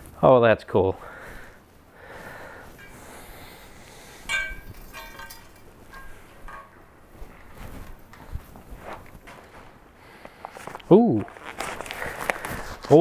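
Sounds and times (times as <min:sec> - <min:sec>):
metal part clinking: 0:02.8 - 0:03.3, 0:04.2 - 0:07.0
packing material rustling: 0:10.4 - 0:13.0.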